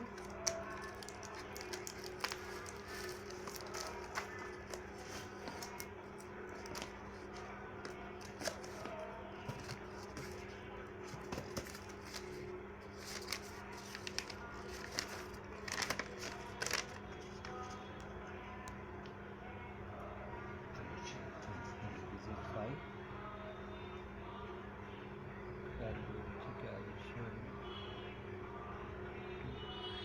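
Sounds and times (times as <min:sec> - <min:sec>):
packaging clicks and crinkles: 0:00.0 - 0:10.5, 0:11.1 - 0:17.8.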